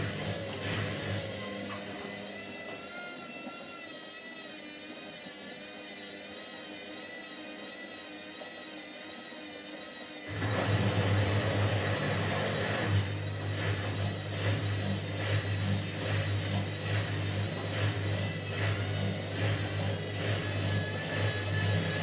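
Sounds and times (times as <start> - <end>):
washing machine spinning: 0.0 - 3.0, 10.3 - 22.0.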